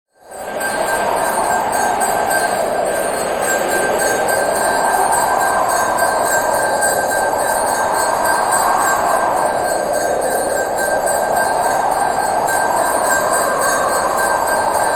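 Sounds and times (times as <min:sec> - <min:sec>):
small bell ringing: 0:00.2 - 0:14.9.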